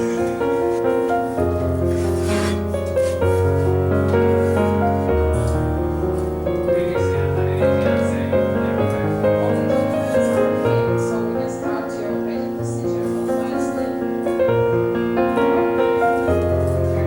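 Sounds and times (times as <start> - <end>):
piano pop music: 0.0 - 17.0.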